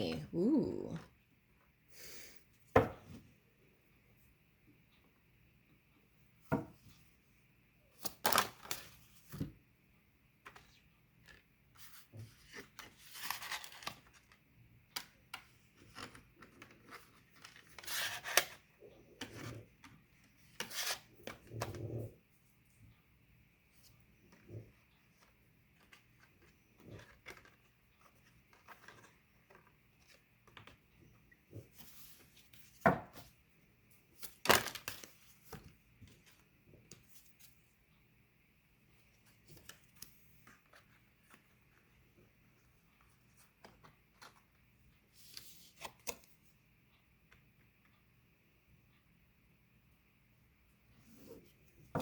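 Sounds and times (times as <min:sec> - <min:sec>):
cards rustling: 0:10.5 - 0:14.4.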